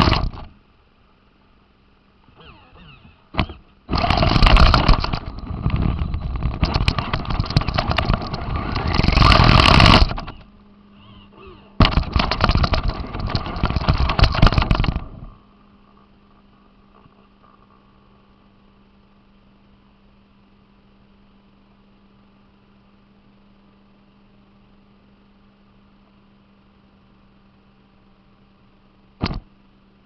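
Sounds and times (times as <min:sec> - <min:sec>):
rc car motor rattling: 0:00.0 - 0:00.6, 0:02.3 - 0:18.0
steady low hum: 0:00.0 - 0:30.0.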